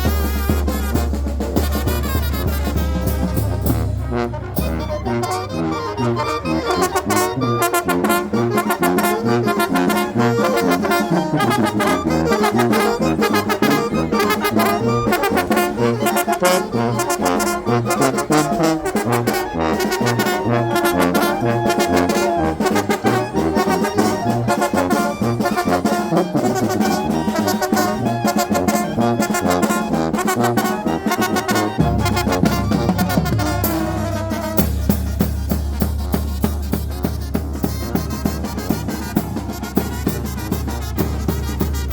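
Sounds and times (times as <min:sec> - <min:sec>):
steady drum beat: 0:00.0 - 0:05.2, 0:26.6 - 0:41.9
brass band playing: 0:00.0 - 0:41.9.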